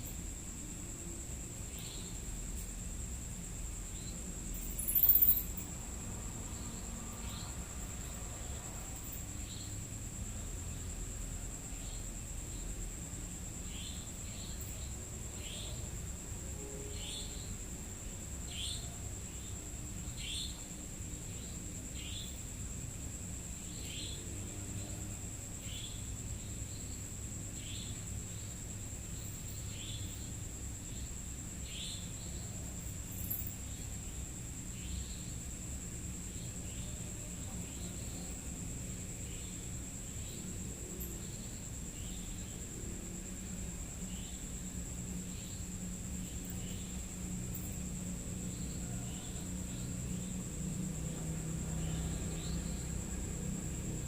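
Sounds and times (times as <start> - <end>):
insects whining: 0.0 - 54.0
insect chirps falling: 3.8 - 5.8, 25.6 - 33.9.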